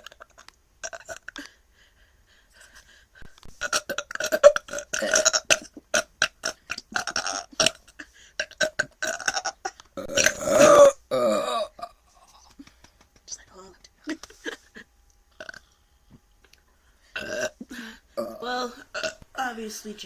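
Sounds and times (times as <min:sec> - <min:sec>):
person burping: 0:00.0 - 0:01.4, 0:03.6 - 0:12.3, 0:15.3 - 0:15.7, 0:17.1 - 0:19.2.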